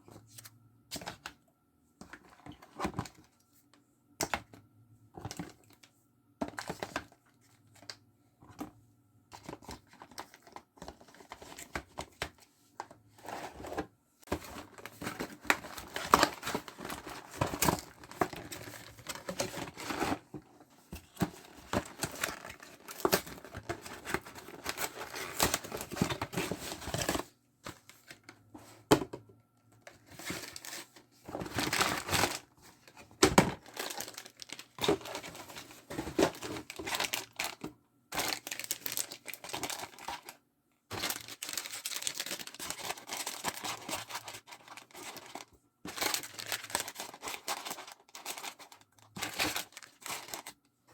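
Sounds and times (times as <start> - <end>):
packaging crinkling and tearing: 14.3 - 20.2, 21.1 - 27.2, 30.1 - 50.6.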